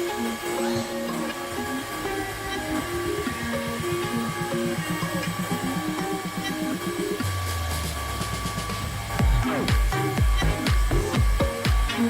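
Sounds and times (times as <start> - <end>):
pulsing electronic notes: 0.0 - 12.0
held deep bass note: 9.2 - 11.5.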